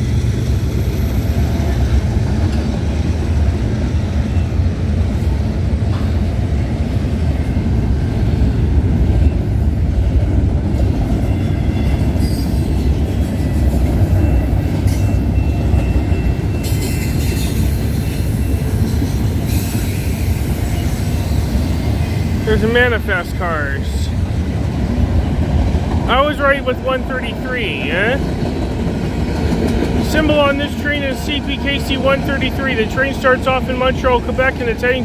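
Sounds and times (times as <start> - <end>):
freight train rumbling on rails: 0.0 - 35.0
high wheel squeal: 11.1 - 22.6.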